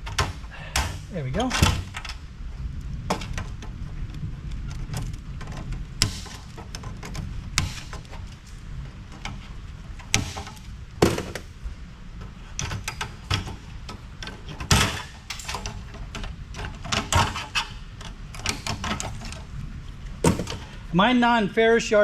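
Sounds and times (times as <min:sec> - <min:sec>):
steady low hum: 0:00.0 - 0:21.6
metal parts and tools clattering: 0:14.2 - 0:19.4, 0:20.2 - 0:20.7.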